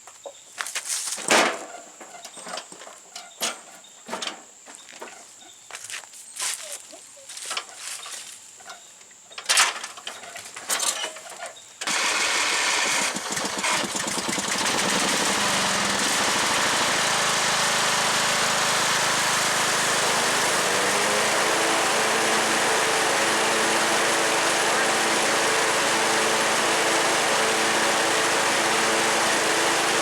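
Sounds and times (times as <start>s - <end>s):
riding mower engine running: 11.8s - 30.0s.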